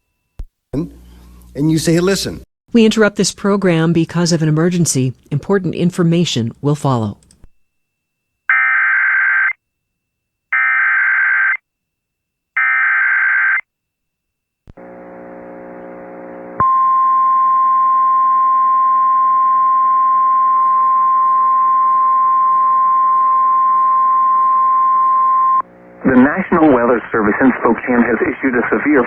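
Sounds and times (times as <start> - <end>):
faint hum and static: 0.0 - 8.4, 14.7 - 29.0
steady attention tone: 14.8 - 29.0.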